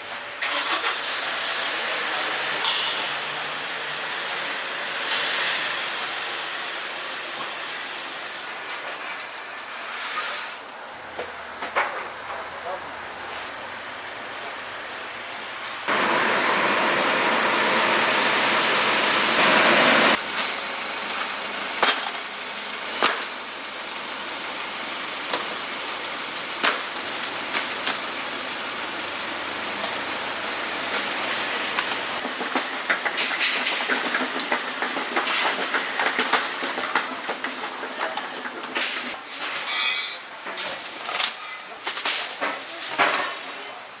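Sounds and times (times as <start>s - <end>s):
metal knocks and clinks: 2.6s - 3.3s.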